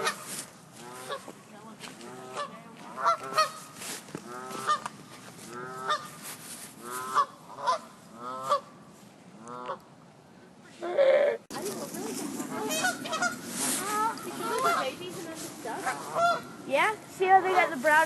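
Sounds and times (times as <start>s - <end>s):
geese honking: 0.0s - 1.3s, 2.0s - 8.8s, 12.4s - 18.0s.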